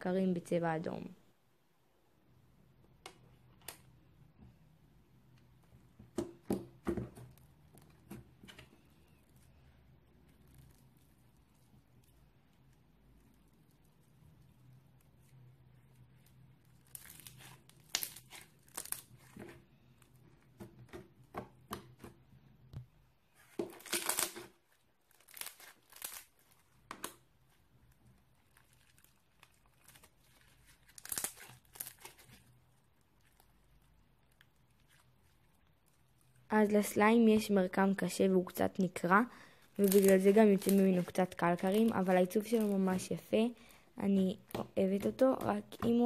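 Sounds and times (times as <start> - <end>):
crunchy slime crackling: 7.1 - 20.6, 23.3 - 46.0.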